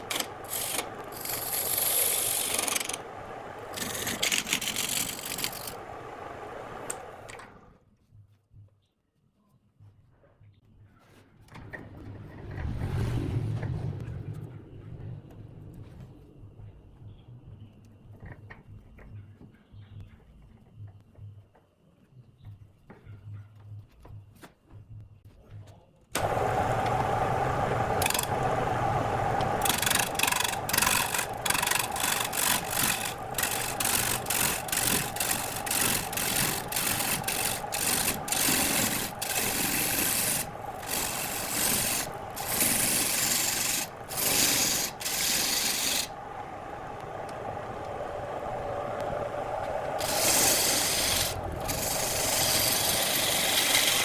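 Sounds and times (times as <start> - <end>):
tool rasping on spinning wood: 0.0 - 7.2, 26.2 - 54.0
lathe motor hum: 0.0 - 7.6, 26.2 - 54.0.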